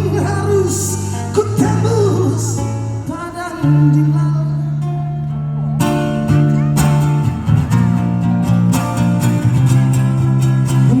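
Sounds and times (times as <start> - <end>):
strummed guitar chords: 0.0 - 11.0
band music: 5.2 - 11.0.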